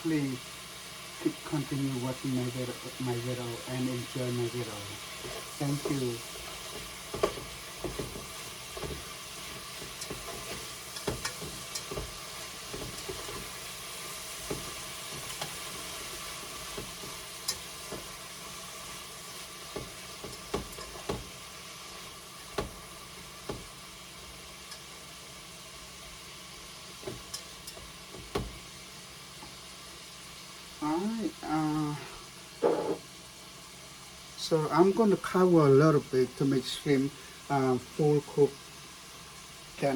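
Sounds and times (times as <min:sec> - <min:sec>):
food sizzling in hot oil: 0:00.0 - 0:39.9
knocks of pan being stirred: 0:02.4 - 0:29.6.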